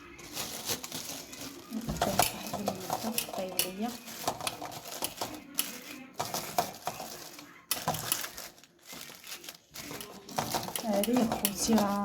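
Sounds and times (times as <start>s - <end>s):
metal cookware clicking: 2.0s - 7.1s, 9.9s - 12.0s.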